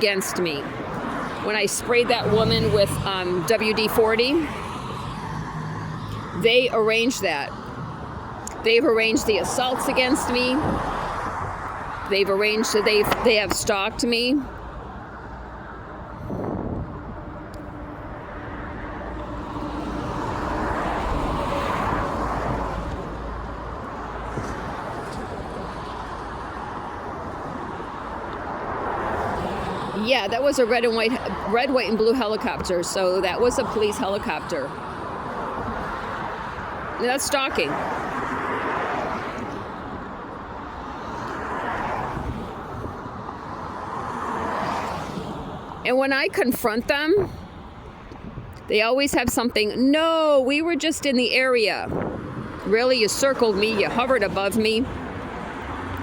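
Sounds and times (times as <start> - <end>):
vehicle passing by: 0.0 - 7.4
background traffic: 0.0 - 56.0.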